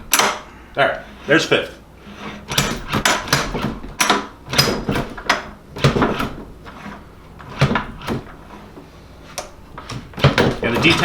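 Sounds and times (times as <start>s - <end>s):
gearbox metal clunks and clicks: 2.1s - 8.7s, 9.3s - 11.0s.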